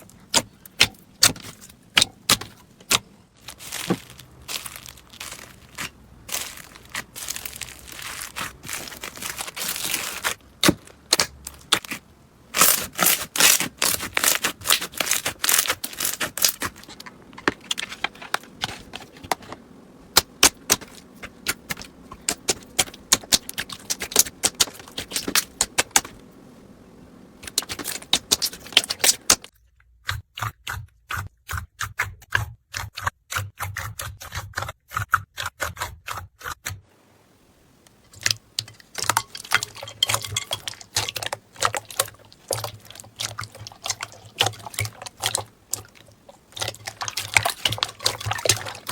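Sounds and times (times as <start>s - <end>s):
slime crackling and popping: 0.3s - 17.0s.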